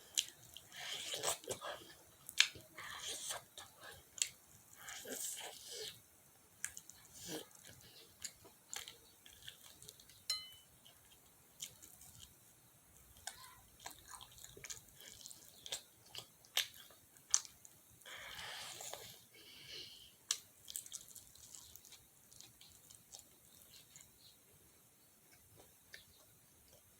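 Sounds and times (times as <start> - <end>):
chewing crispy fried chicken: 0.0 - 19.4, 20.2 - 26.9.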